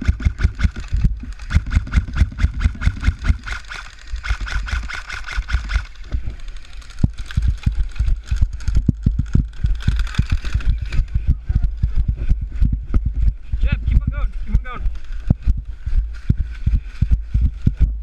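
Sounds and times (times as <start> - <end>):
footsteps and gear thumps: 7.1 - 18.0.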